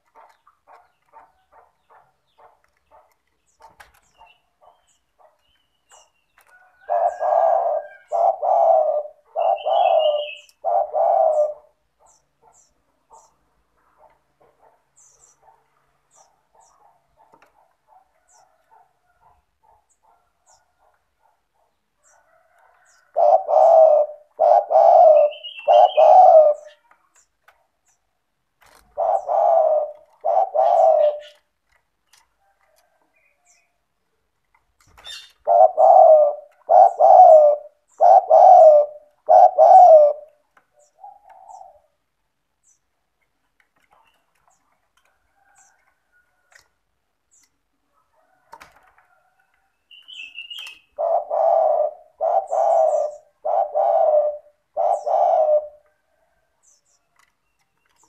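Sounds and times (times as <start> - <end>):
dove cooing: 0.0 - 13.4, 14.0 - 26.9, 28.6 - 31.8, 35.3 - 42.1, 50.1 - 56.6.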